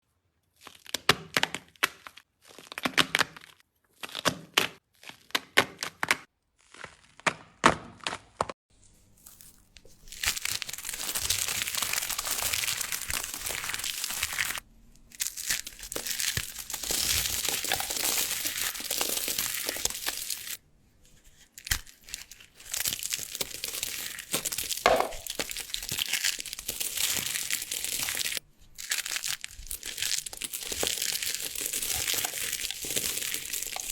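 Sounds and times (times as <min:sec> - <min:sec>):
dry soap cracking and crumbling: 0:08.9 - 0:33.9.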